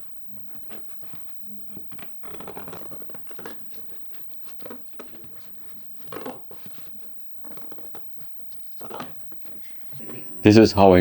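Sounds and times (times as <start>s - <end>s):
paper rustling and crinkling: 0.0s - 10.4s.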